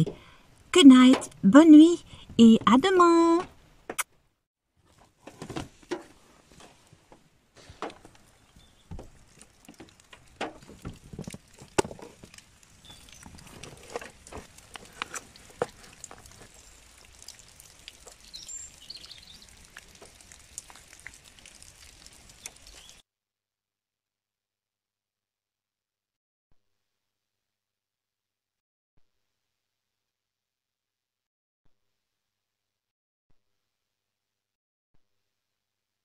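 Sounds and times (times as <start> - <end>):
raindrops tapping on car roof: 6.7 - 23.0.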